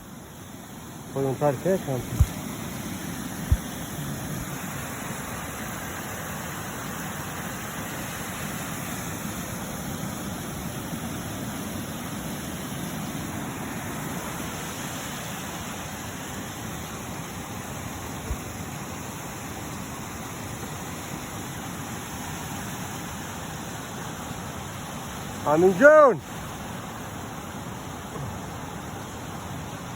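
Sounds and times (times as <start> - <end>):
steady rushing noise: 0.9 - 5.6, 25.4 - 26.2
brief knock: 28.1 - 28.4.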